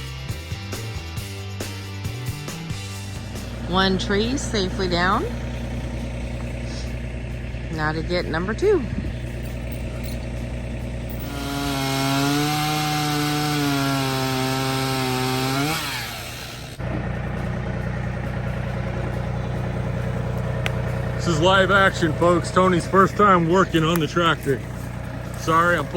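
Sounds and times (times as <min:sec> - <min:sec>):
tractor engine idling: 0:00.0 - 0:25.9
chainsaw cutting wood: 0:10.7 - 0:17.2.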